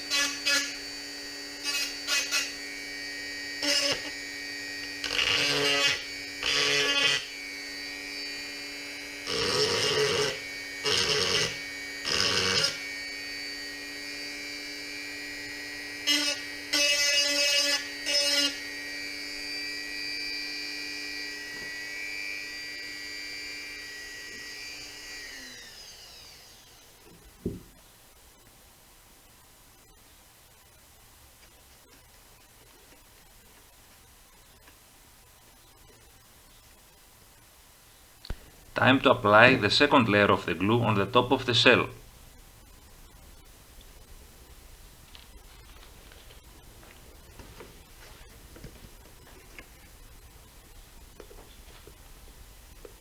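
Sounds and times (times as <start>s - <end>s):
rotary tool grinding plastic: 0.0s - 26.8s
knock: 27.4s - 27.7s.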